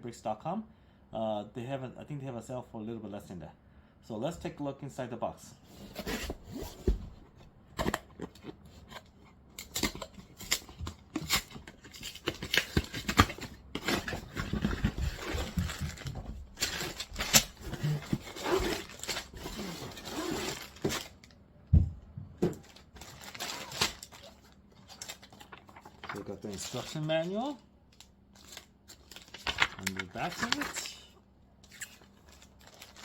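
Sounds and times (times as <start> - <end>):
cardboard tearing: 9.6 - 21.2, 23.0 - 26.8
packaging crinkling: 11.2 - 21.3, 22.6 - 31.0, 31.6 - 33.0.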